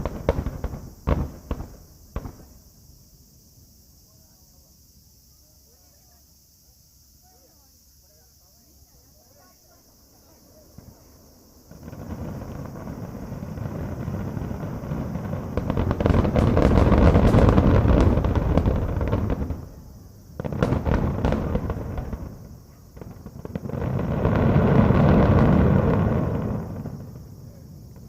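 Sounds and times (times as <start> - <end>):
fireworks booming and crackling: 0.0 - 3.3, 10.2 - 28.0.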